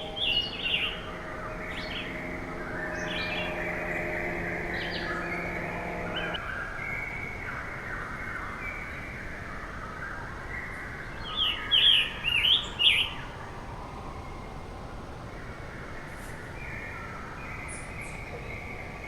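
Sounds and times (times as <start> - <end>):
bird singing slurred notes: 0.0 - 6.4
background birds calling: 0.0 - 19.0.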